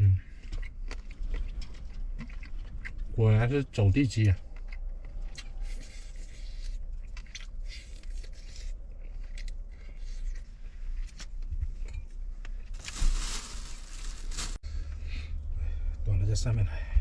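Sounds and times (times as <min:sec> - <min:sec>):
person chewing food: 0:00.2 - 0:03.2, 0:04.2 - 0:13.0
steady low rumble: 0:08.8 - 0:17.0
rustling noise: 0:12.6 - 0:14.6.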